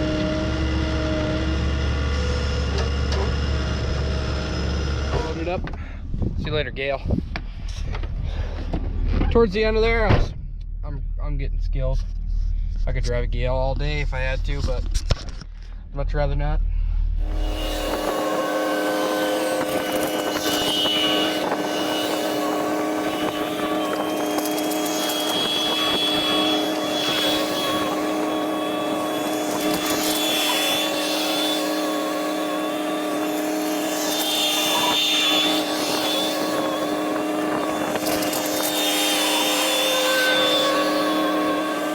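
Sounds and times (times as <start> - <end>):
skid steer engine running: 0.0 - 6.0, 17.2 - 41.9
high whine: 15.8 - 41.9.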